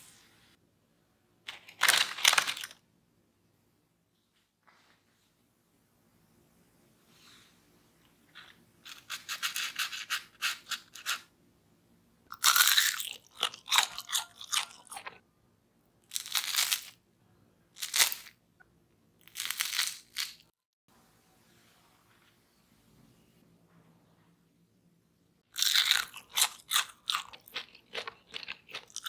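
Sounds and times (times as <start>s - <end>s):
crispy snacks crunching: 1.5s - 2.8s, 12.3s - 15.2s, 16.1s - 17.0s, 17.8s - 18.3s, 19.2s - 20.4s, 25.6s - 29.0s.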